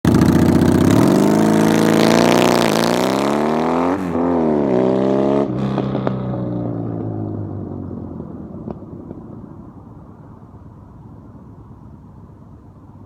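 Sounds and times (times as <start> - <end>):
motorcycle engine revving: 0.0 - 8.2.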